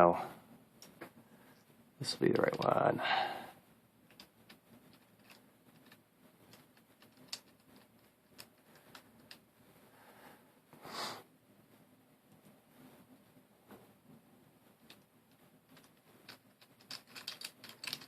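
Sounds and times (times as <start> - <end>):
soft rush of noise: 0.0 - 16.8
plastic puzzle pieces clicking: 4.1 - 9.4, 14.8 - 18.0.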